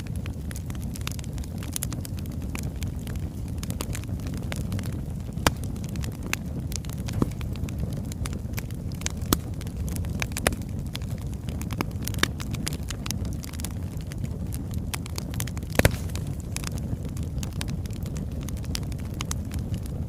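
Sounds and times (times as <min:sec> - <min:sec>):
fire crackling and popping: 0:00.0 - 0:20.0
fire rumbling: 0:00.0 - 0:20.0.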